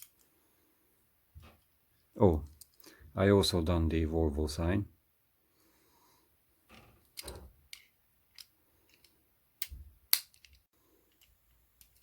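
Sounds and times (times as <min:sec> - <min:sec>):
small clicks and taps of toy car: 0:07.1 - 0:12.0.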